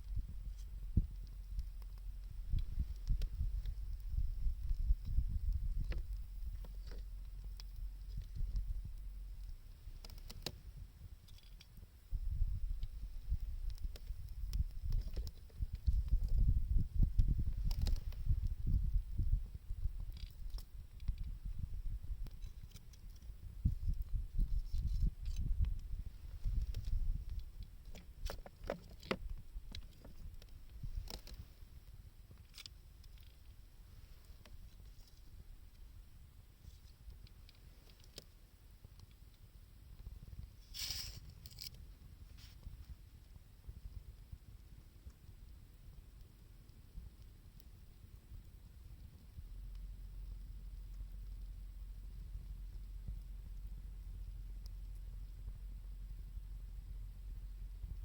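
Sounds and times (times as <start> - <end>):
wood fire crackling: 0.0 - 28.6
wind rumbling on microphone: 0.0 - 37.8, 39.5 - 58.0.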